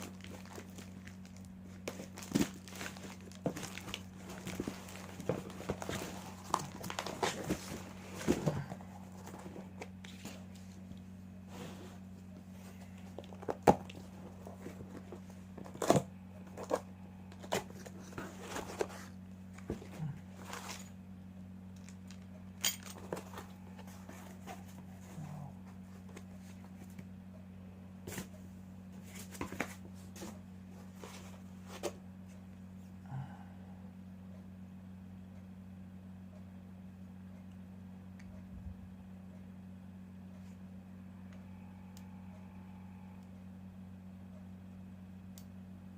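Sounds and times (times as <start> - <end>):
packaging rustling and clicking: 0.0 - 10.4, 13.0 - 20.9, 21.8 - 25.2
low electrical hum: 0.0 - 45.9.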